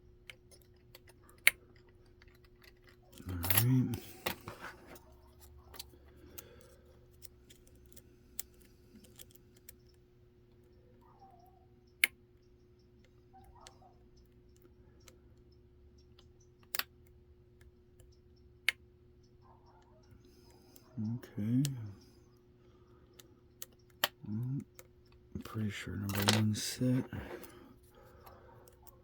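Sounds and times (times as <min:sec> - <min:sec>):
lock pick clicks and scrapes: 0:00.3 - 0:09.8.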